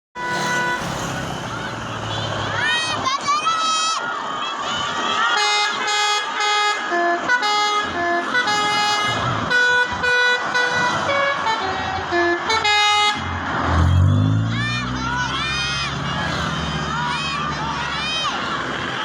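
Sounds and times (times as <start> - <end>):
musical bus air horn: 0.2 - 1.3, 5.2 - 14.4.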